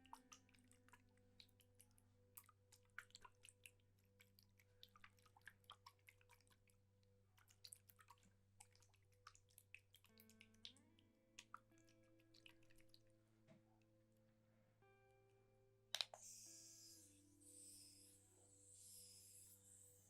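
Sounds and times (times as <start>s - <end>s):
low droning background music: 0.0s - 7.4s, 10.0s - 20.0s
water dripping and splashing: 0.0s - 10.8s, 11.4s - 13.1s.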